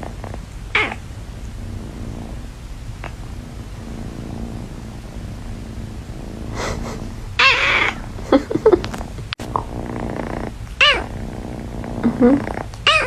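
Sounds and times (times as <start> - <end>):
cat purring: 0.0 - 13.0
cat mewing: 0.7 - 1.0, 6.6 - 8.4, 10.8 - 11.1
cat meowing: 0.8 - 1.0.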